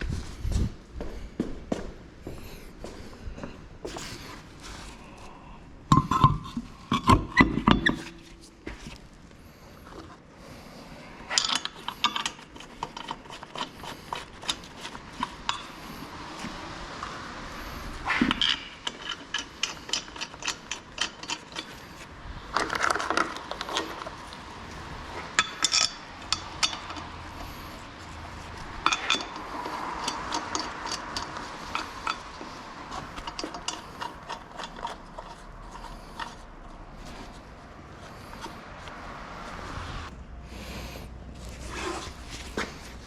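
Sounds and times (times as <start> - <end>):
metal tools clinking and knocking: 5.9 - 8.4, 11.2 - 16.2, 18.1 - 37.4.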